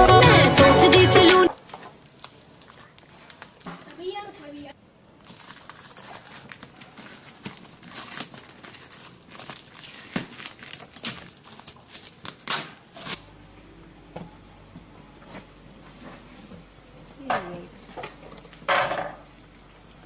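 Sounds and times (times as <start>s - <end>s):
packaging crinkling and tearing: 1.5s - 3.7s, 5.2s - 13.2s
steady low hum: 13.2s - 18.5s.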